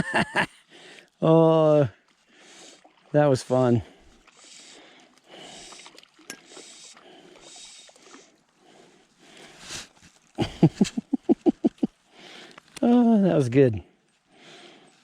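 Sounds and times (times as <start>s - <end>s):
person laughing: 0.0s - 0.6s, 10.4s - 12.0s
person breathing: 0.6s - 1.2s, 2.2s - 3.0s, 3.8s - 10.1s, 12.1s - 12.7s, 14.3s - 15.0s.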